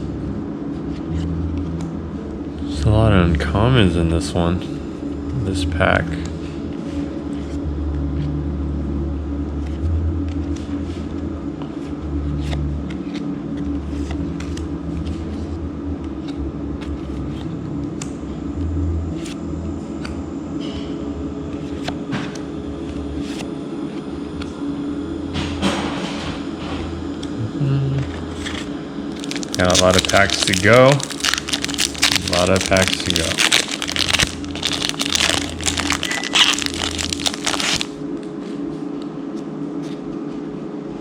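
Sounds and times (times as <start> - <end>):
low mechanical rumble: 0.0 - 41.0
trading cards clicking and rustling: 28.4 - 37.9.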